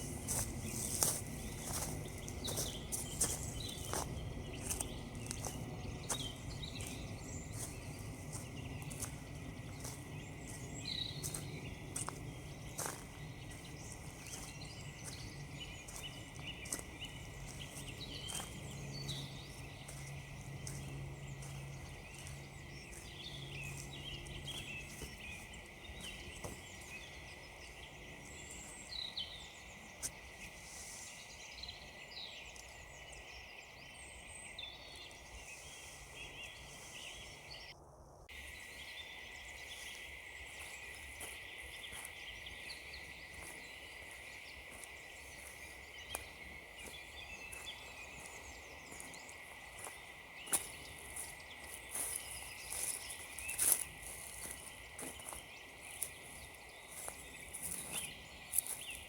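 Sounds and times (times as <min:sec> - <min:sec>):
faint low drone: 0:00.0 - 0:29.9
footsteps crunching on frozen ground: 0:00.0 - 0:33.6, 0:38.3 - 0:59.0
small birds chirping: 0:00.0 - 0:59.0.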